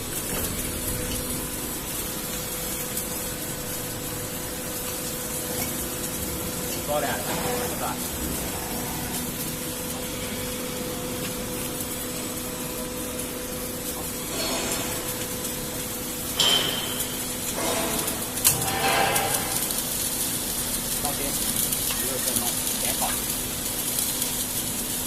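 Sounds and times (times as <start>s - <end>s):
welding machine humming: 0.0s - 25.0s
sharp metallic clank: 16.4s - 19.8s.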